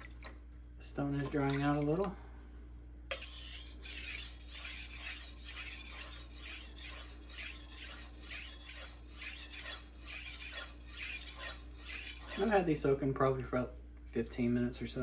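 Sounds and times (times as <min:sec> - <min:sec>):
knife scraping on whetstone: 0:03.1 - 0:12.6.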